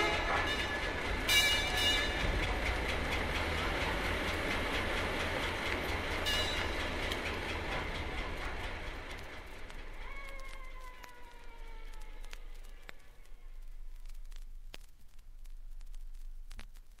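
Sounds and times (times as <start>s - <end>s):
train horn blast: 0.0s - 2.4s
train wheels clattering on rails: 0.0s - 12.7s.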